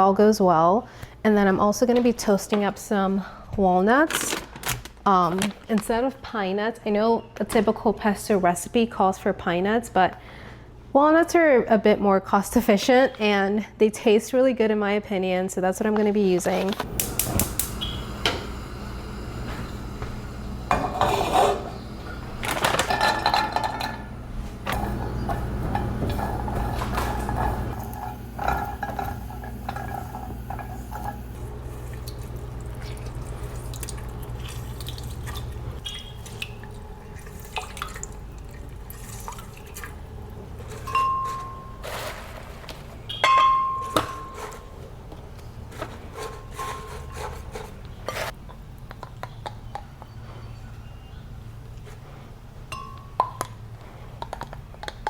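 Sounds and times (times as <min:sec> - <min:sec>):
steady low hum: 0:16.7 - 0:41.8
dishes and utensils clinking: 0:19.7 - 0:31.4, 0:40.6 - 0:44.8, 0:45.7 - 0:47.7.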